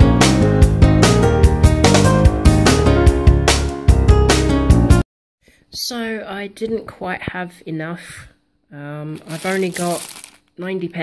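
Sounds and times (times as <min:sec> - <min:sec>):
music with steady beat: 0:00.0 - 0:05.0.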